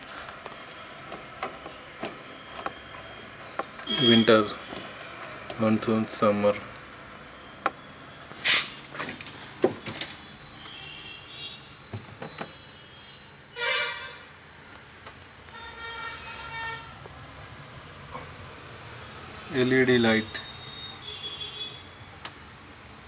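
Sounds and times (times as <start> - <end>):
short sharp rustle: 8.2 - 10.2.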